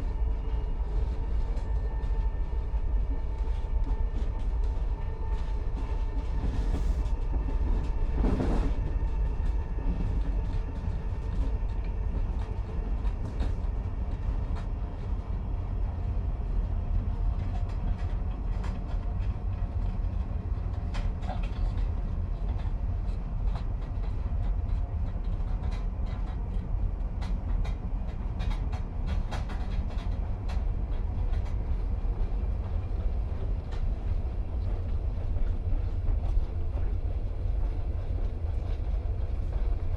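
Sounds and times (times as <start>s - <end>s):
train wheels rumbling: 0.0s - 15.1s
faint hum: 0.0s - 39.9s.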